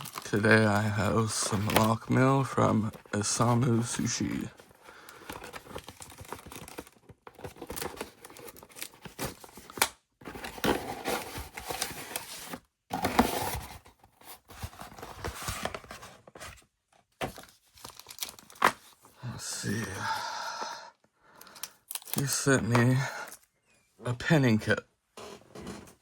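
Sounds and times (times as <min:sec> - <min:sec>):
packaging tearing and crinkling: 0:00.0 - 0:02.2, 0:05.0 - 0:13.8, 0:17.8 - 0:18.9, 0:21.5 - 0:22.4.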